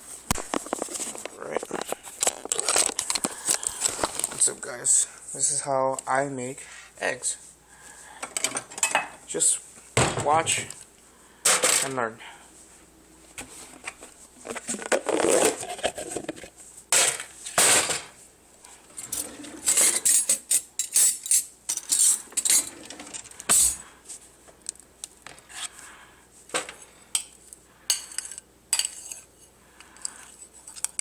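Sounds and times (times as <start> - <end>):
dishes and cutlery clattering: 19.0 - 23.8.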